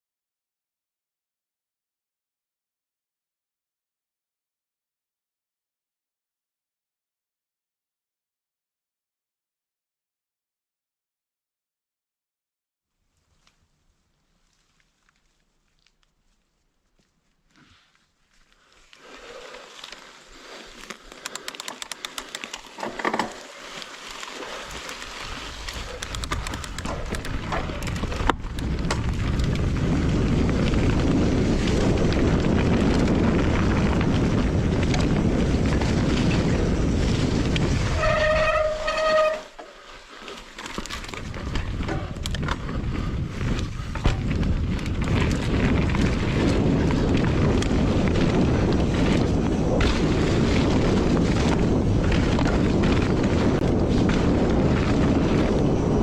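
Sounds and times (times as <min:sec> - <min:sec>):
mountain bike tyre noise: 0:13.0 - 0:56.0
wind rushing over microphone: 0:24.7 - 0:39.1, 0:41.1 - 0:56.0.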